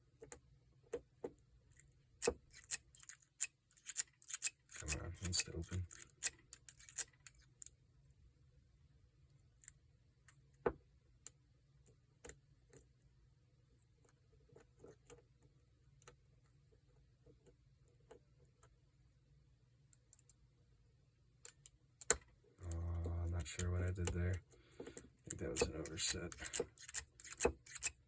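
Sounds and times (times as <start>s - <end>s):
lock pick clicking: 25.3s - 28.0s.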